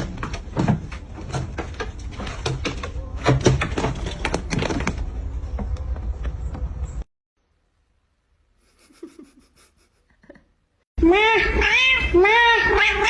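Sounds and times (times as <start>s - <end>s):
knocks and clattering: 0.0s - 6.7s.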